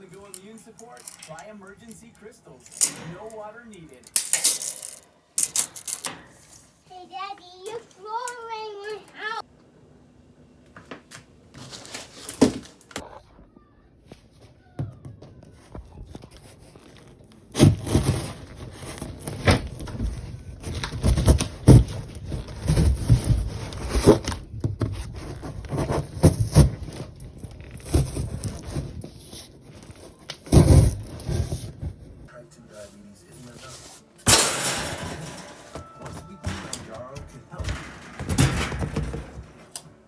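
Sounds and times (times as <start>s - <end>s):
objects knocking and clattering: 2.6s - 6.8s, 14.8s - 32.3s, 34.2s - 39.9s.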